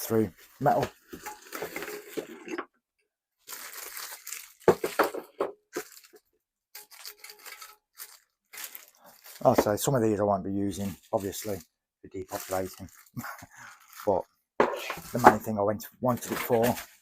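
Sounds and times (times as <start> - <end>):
packaging crinkling: 3.4 - 10.0, 12.2 - 14.2.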